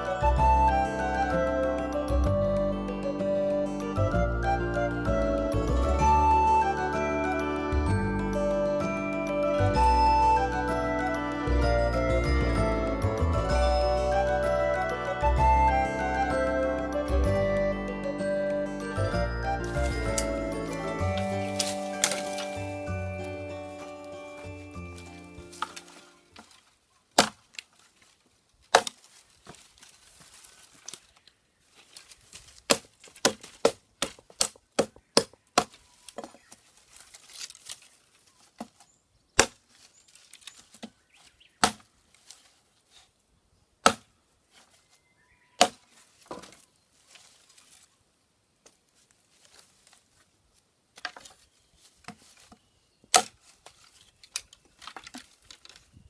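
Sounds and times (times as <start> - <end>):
faint rustling: 19.7 - 34.4, 35.6 - 39.0, 39.6 - 43.3, 44.4 - 45.2, 45.8 - 56.0
sharp snaps and cracks: 35.5 - 38.8.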